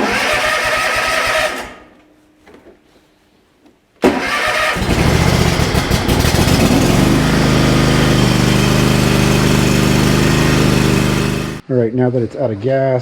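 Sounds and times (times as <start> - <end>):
mower engine starting and running: 0.0 - 1.8, 4.1 - 11.6.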